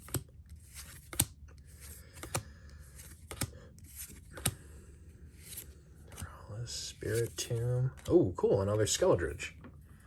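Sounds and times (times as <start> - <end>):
trading card clicks: 0.0 - 4.6
faint card rustle: 0.0 - 8.2.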